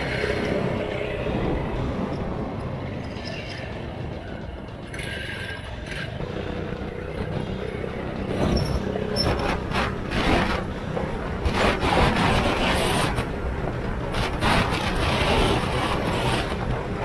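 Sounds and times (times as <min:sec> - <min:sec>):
minibike engine revving: 0:04.9 - 0:17.0.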